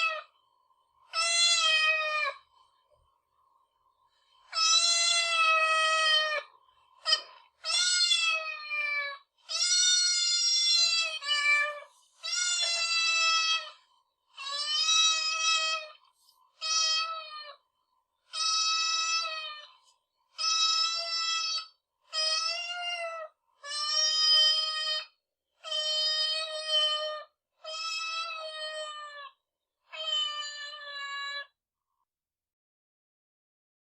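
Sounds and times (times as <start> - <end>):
cat meowing: 0.0 - 0.3, 1.1 - 2.4, 4.5 - 6.5, 7.1 - 13.8, 14.4 - 16.0, 16.6 - 17.6, 18.3 - 19.8, 20.4 - 31.6.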